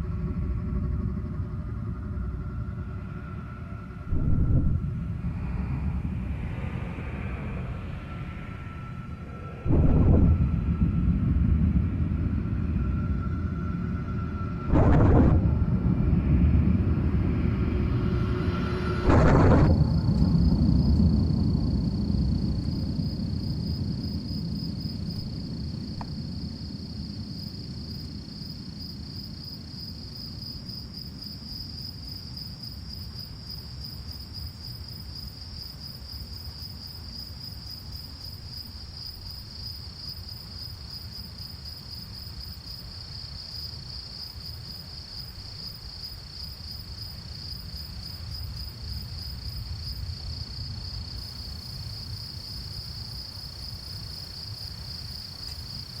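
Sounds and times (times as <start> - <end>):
low rumble: 0.0 - 30.2
insects trilling: 15.9 - 56.0.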